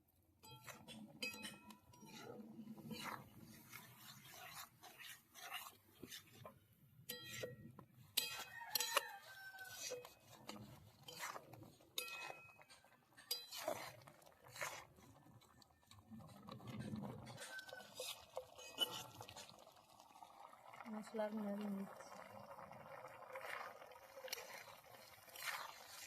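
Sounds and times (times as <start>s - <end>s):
rooster crowing: 8.5s - 10.0s.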